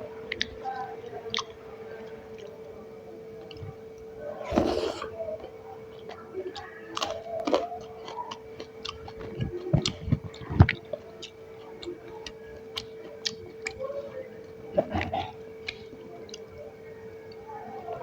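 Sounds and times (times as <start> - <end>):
chewing with wet mouth clicks: 0.2 - 18.0.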